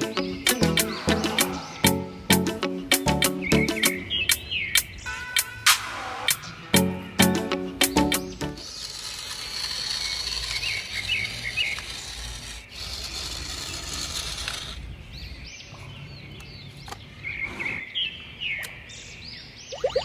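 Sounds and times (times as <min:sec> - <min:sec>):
small birds chirping: 0:00.0 - 0:05.1, 0:06.3 - 0:08.9, 0:14.8 - 0:20.0.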